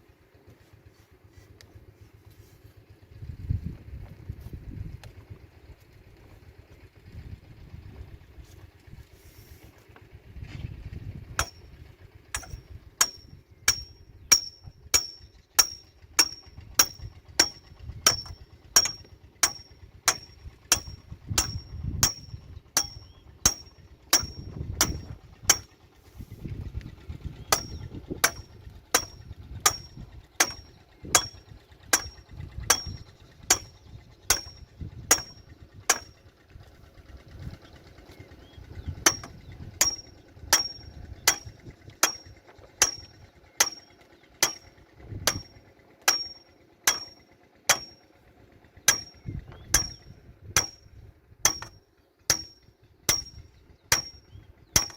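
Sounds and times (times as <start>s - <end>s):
sharp metallic ticks: 11.4s - 25.8s, 27.5s - 36.4s, 39.0s - 48.2s, 48.8s - 54.9s.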